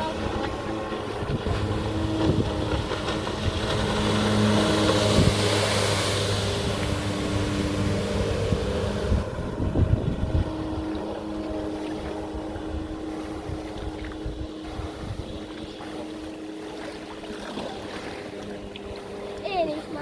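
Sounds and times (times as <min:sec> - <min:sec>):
jet ski engine droning: 0:00.0 - 0:20.0
wind and water rush: 0:00.0 - 0:20.0.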